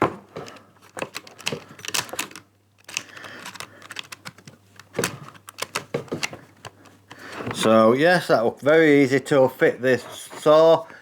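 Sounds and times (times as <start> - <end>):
jigsaw blade clicking and knocking: 0.9 - 6.3.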